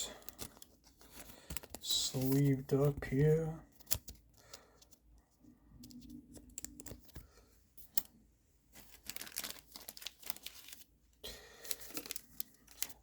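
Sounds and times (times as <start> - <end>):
plastic card sleeves crinkling: 0.1 - 5.0, 8.7 - 13.0.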